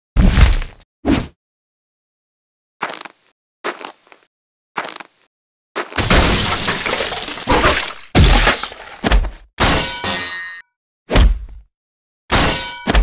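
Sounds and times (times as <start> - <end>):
loud shattering crashes: 6.0 - 9.0.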